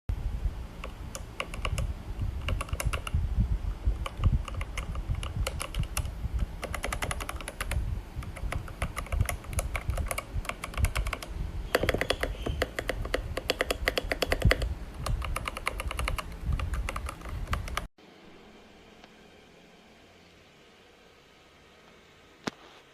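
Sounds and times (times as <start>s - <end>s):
mechanical keyboard key clacks: 4.0s - 17.9s.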